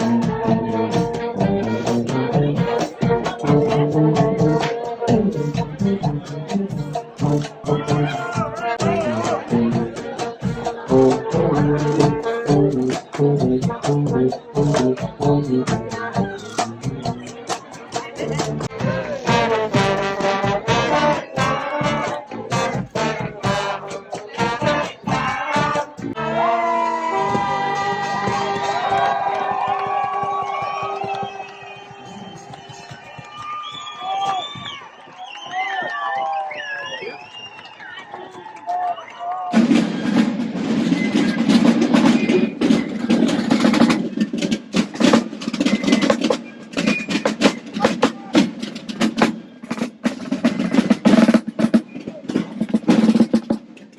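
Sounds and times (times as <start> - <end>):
marching snare drums: 0.0 - 26.2, 39.5 - 53.8
trumpets and trombones: 0.0 - 29.9.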